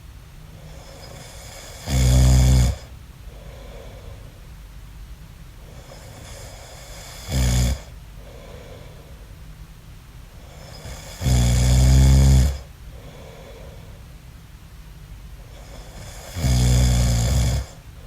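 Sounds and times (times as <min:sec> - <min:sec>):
man snoring: 0:00.6 - 0:02.9, 0:05.7 - 0:08.7, 0:10.4 - 0:12.7, 0:15.5 - 0:17.8
faint breathing: 0:02.8 - 0:04.6, 0:08.1 - 0:09.5, 0:12.5 - 0:14.2.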